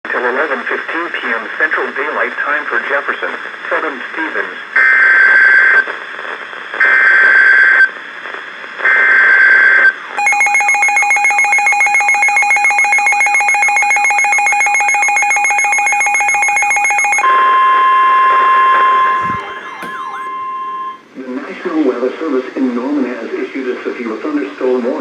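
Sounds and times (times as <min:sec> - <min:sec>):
fast-pulsing electronic alarm tone: 0:10.2 - 0:17.2, 0:18.8 - 0:21.0
steady radio warning alarm tone: 0:10.2 - 0:21.1.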